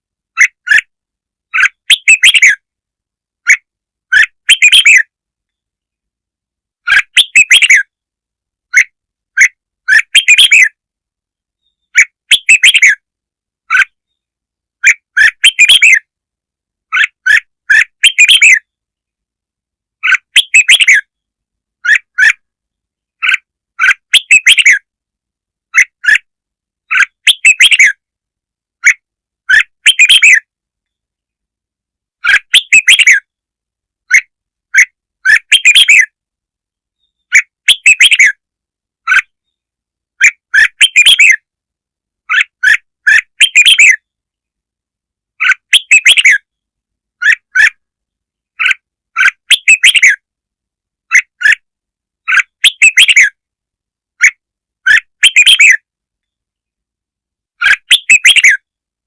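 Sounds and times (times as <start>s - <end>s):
bird song warbled phrases: 0.3s - 0.9s, 1.5s - 2.7s, 3.4s - 6.0s, 6.8s - 10.9s, 11.5s - 16.2s, 16.8s - 19.2s, 19.9s - 25.0s, 25.7s - 28.1s, 28.8s - 31.1s, 32.2s - 33.4s, 34.0s - 36.2s, 36.9s - 38.4s, 39.0s - 41.5s, 42.2s - 44.2s, 45.4s - 50.3s, 51.1s - 51.6s, 52.2s - 53.5s, 54.2s - 56.7s, 57.6s - 58.7s.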